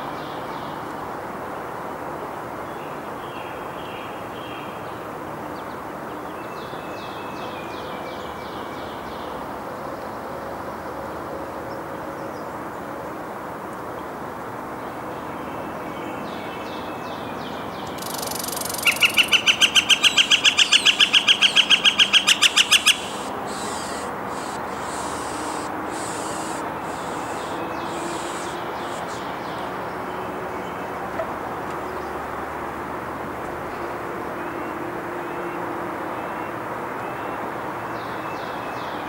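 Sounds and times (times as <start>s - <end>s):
steady background hiss: 17.4s - 29.8s
woodpecker rapid wik call: 17.8s - 29.7s.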